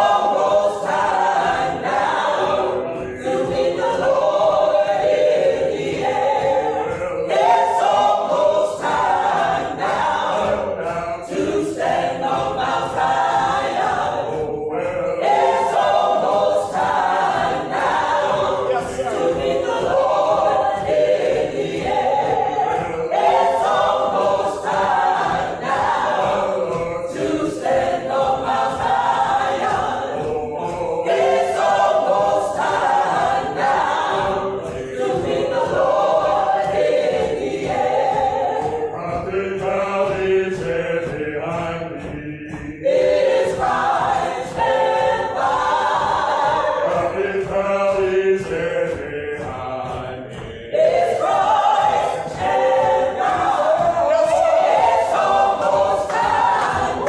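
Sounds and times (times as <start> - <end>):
choir singing a cappella: 0.0 - 57.0.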